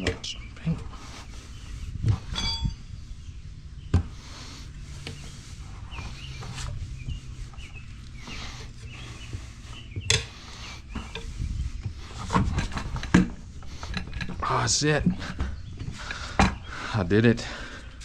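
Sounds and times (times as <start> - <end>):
metal tire spoon clinking: 2.3 - 2.9.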